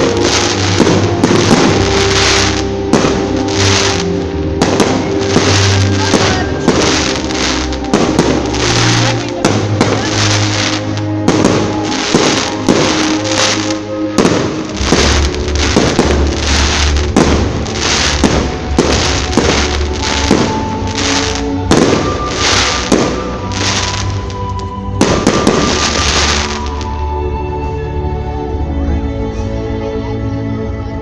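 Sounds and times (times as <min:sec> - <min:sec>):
fireworks bursting: 0:00.0 - 0:26.9
music playing: 0:00.0 - 0:31.0.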